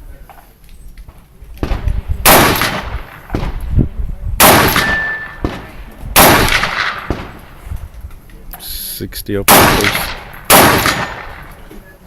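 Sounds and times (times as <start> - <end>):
rifle shots: 1.6 - 3.7, 4.4 - 7.6, 9.5 - 11.7.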